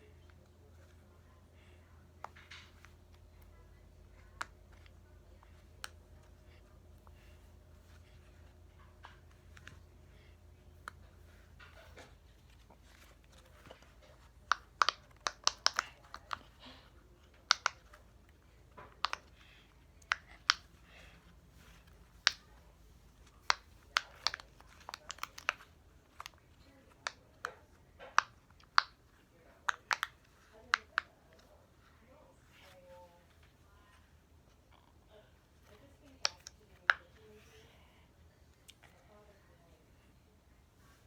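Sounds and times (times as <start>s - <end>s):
plastic fidget toy clicking: 14.5s - 16.5s, 17.4s - 18.0s, 19.0s - 19.4s, 23.4s - 27.5s.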